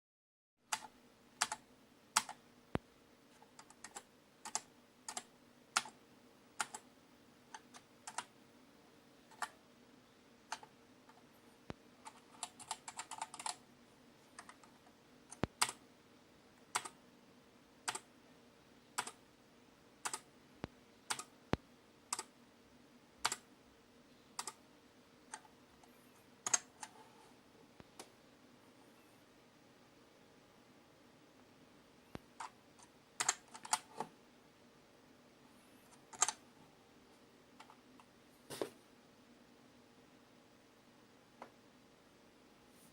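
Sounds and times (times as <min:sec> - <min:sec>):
faint steady hum: 0:00.6 - 0:42.9
keyboard keystrokes clacking: 0:12.0 - 0:13.6, 0:19.0 - 0:19.2, 0:36.1 - 0:36.4.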